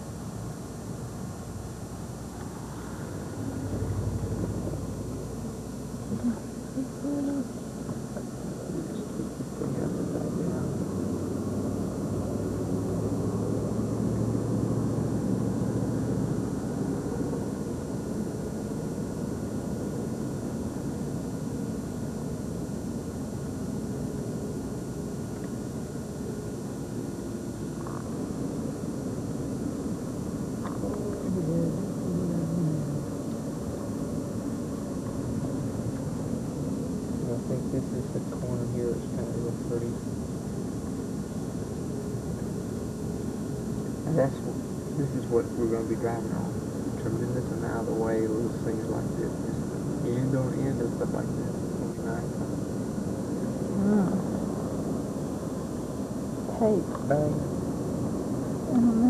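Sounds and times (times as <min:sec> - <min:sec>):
car engine and road rumble: 0:00.0 - 0:21.0, 0:27.6 - 0:42.9.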